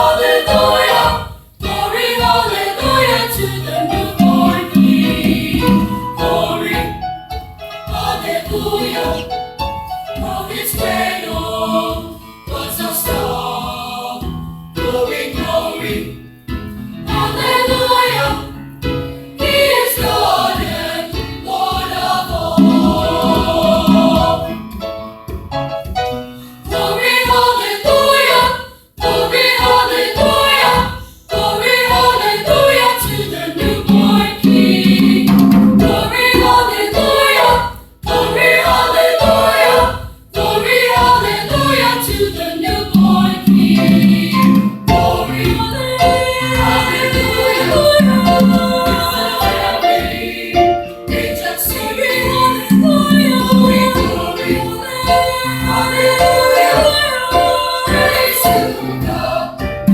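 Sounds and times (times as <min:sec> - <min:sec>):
school chorus singing: 0:00.0 - 0:16.3, 0:17.0 - 0:24.8, 0:26.6 - 0:59.9.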